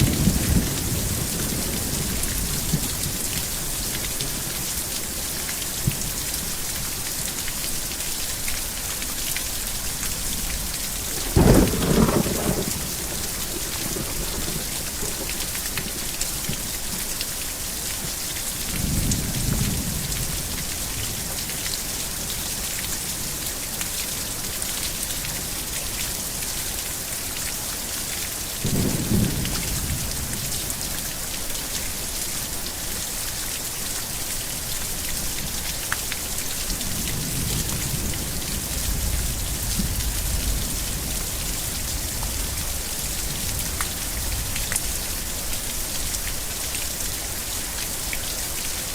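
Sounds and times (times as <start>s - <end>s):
thunder rumbling: 0.0s - 3.2s, 10.4s - 16.0s
heavy rain: 0.0s - 48.9s.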